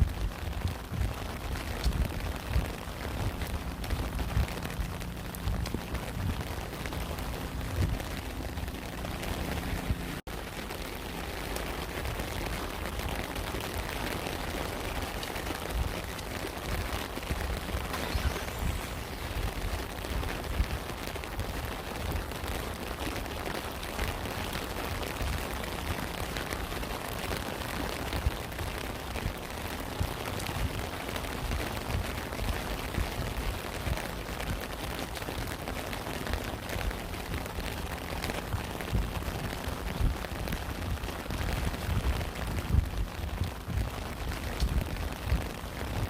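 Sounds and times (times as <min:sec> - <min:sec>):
raindrops ticking: 0:00.0 - 0:46.0
steady rain: 0:00.0 - 0:46.0
low thudding rumble: 0:00.1 - 0:10.3.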